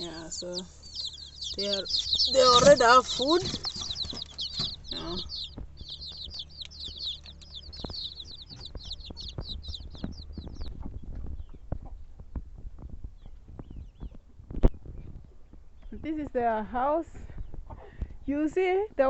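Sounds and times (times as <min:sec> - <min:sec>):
chicks peeping: 0:00.0 - 0:18.8.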